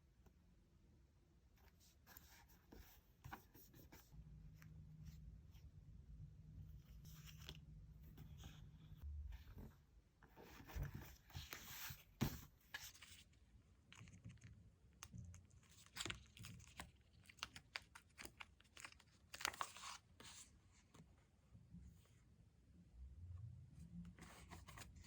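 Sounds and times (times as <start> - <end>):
paper rustling: 10.4 - 21.0.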